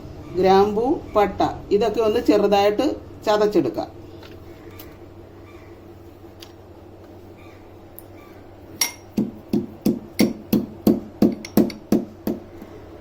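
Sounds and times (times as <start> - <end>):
pestle pounding in a mortar: 8.9 - 12.5.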